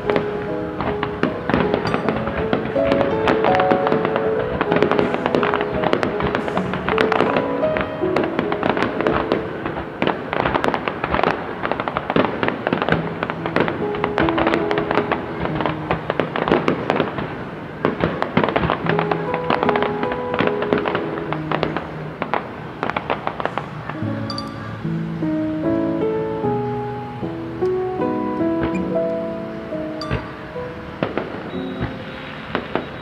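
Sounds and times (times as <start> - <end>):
music playing: 0.0 - 11.2, 23.0 - 32.9
fireworks bangs and crackles: 0.0 - 26.6, 28.0 - 33.0.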